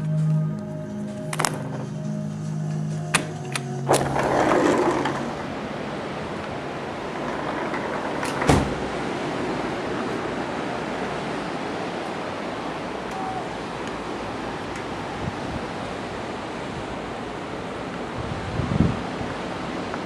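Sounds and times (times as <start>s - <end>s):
ocean surf rushing: 1.1s - 20.0s
wind on microphone: 3.9s - 17.4s, 18.0s - 20.0s.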